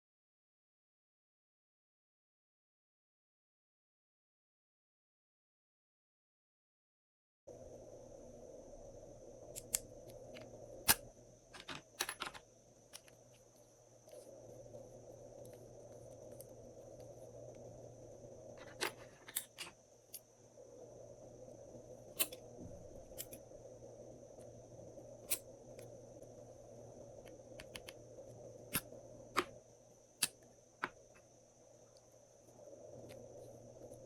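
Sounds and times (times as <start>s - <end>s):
steady background hum: 7.5s - 34.0s.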